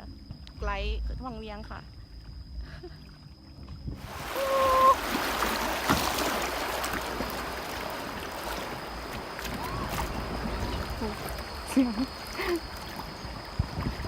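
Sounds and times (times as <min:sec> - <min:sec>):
river water rushing and splashing: 0:04.0 - 0:14.0.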